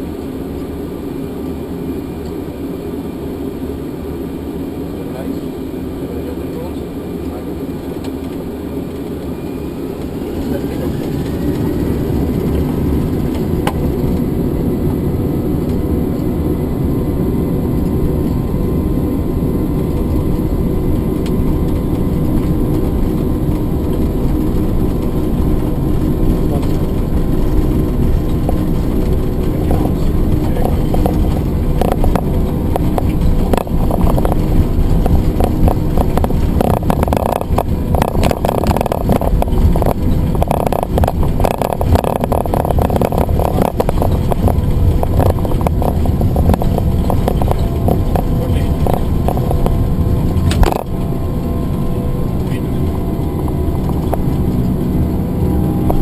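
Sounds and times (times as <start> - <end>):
jet engines whining and roaring: 0.0 - 56.0
knocks and rattles from runway: 4.7 - 16.4, 17.4 - 56.0.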